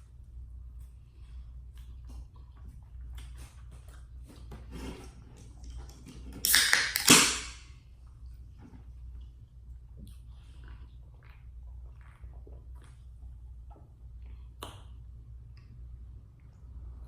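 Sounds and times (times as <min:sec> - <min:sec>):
low steady hum: 0:00.0 - 0:17.0
wet chewing and mouth clicks: 0:00.7 - 0:04.6, 0:09.0 - 0:15.8.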